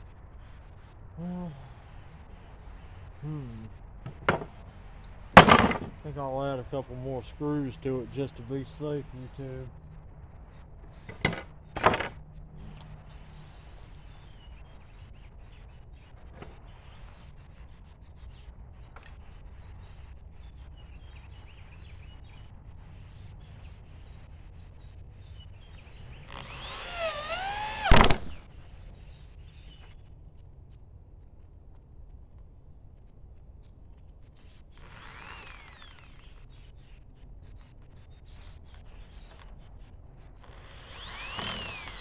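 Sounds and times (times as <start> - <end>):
knocks on wood: 4.1 - 4.6, 5.4 - 6.0, 11.1 - 12.2, 26.3 - 28.5
power drill driving screw: 4.1 - 4.6, 5.4 - 6.4, 11.1 - 12.2, 25.8 - 28.6, 34.7 - 36.7, 40.4 - 42.0.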